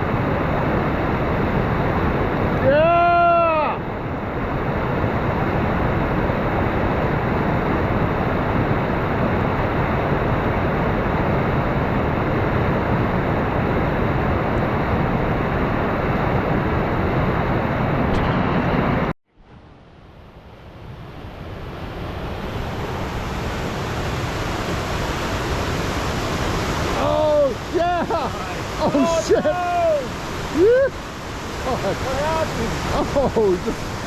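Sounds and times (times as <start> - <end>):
river whitewater roaring: 0.0 - 19.1, 20.3 - 34.0
person shouting: 2.6 - 3.8, 27.0 - 31.0.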